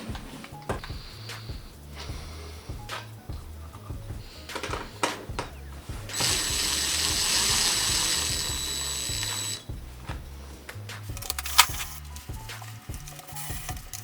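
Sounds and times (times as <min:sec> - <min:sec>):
background music with bass beat: 0:00.0 - 0:14.0
power tool whining: 0:06.1 - 0:09.7
handling clicks: 0:11.1 - 0:12.2.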